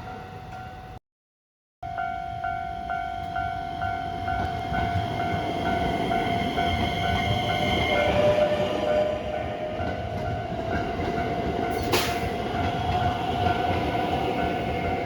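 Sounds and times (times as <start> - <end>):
level crossing warning bell: 0.0 - 1.0, 1.8 - 15.0
train rumbling: 2.8 - 15.0.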